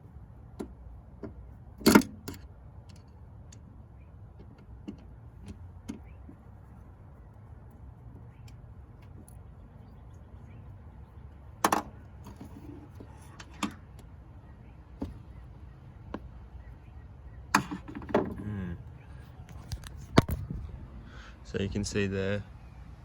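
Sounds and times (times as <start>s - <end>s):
tools clicking and knocking: 0.6s - 3.7s, 17.6s - 18.4s
steady low rumble: 18.6s - 23.0s.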